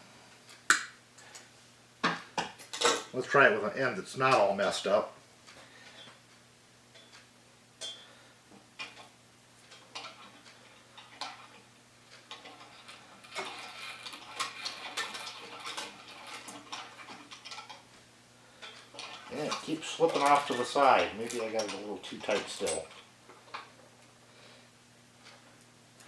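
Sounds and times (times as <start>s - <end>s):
wire scraping through blade: 12.2s - 17.8s.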